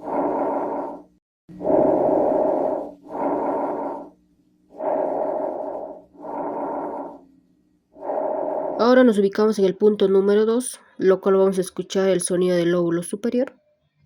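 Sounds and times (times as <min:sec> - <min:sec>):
breathing in and out: 0:00.0 - 0:08.9.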